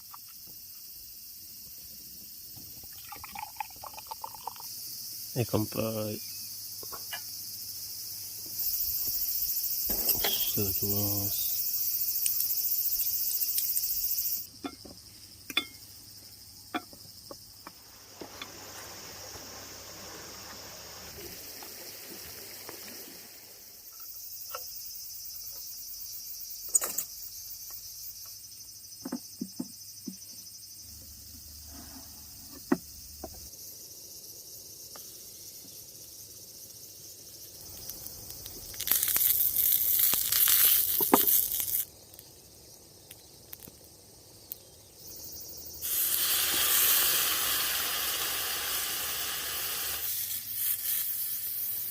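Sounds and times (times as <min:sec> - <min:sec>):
crickets chirping: 0:00.0 - 0:51.9
loud hissing: 0:08.2 - 0:14.5, 0:17.6 - 0:24.1, 0:31.5 - 0:41.9, 0:45.0 - 0:51.9.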